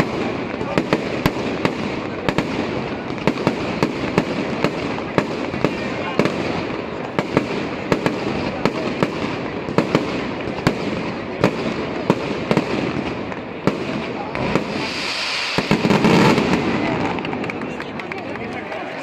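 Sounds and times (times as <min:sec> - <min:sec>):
firework cracks: 0:00.0 - 0:19.0
hiss of firework sparks: 0:14.3 - 0:17.0.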